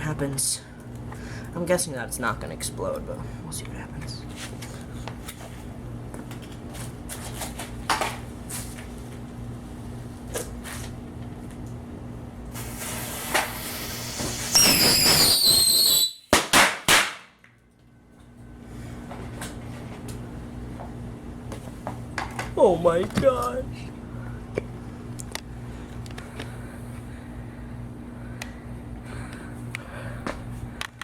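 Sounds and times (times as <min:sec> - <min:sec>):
fireworks hissing and whistling: 0:12.6 - 0:16.5
firework bangs: 0:12.6 - 0:17.2.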